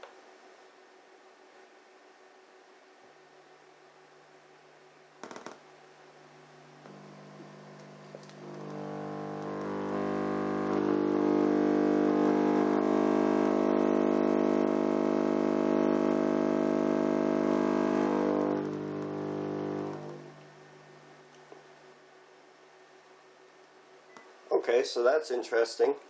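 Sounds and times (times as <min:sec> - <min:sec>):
subwoofer test tone: 0:06.7 - 0:21.2.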